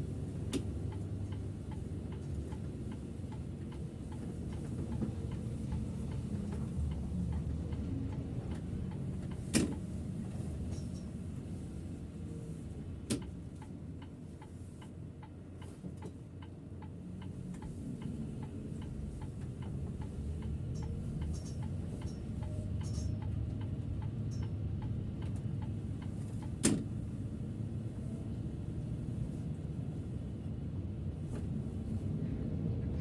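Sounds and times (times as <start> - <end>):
bus rumble: 0.0 - 33.0
turn signal ticking: 0.2 - 9.9, 13.1 - 27.0.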